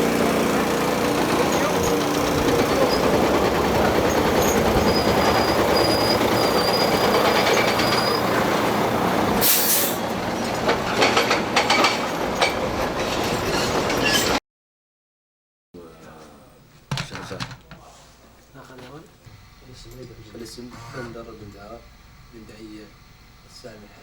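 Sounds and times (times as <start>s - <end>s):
heavy machinery noise: 0.0s - 14.4s
high-pitched metal squealing: 1.3s - 8.4s
metal clanks and knocks: 10.3s - 14.4s.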